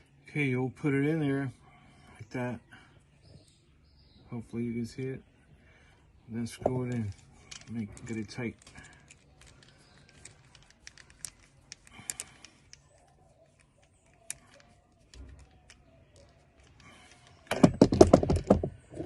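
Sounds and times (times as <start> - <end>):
rattling and knocking handling noise: 14.0 - 19.0.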